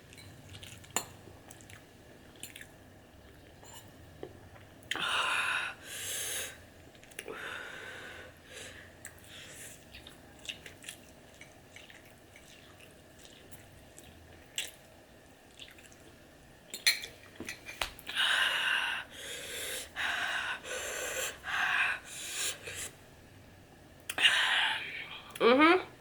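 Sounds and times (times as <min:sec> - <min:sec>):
chewing with mouth clicks: 0:00.1 - 0:03.6, 0:09.0 - 0:14.9, 0:15.5 - 0:16.1.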